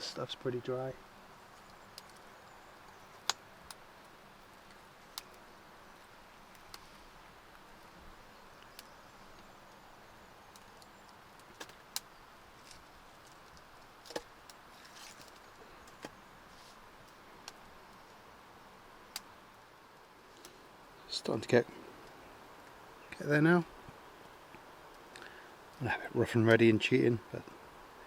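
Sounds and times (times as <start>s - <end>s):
fire crackling and popping: 0.0s - 21.2s.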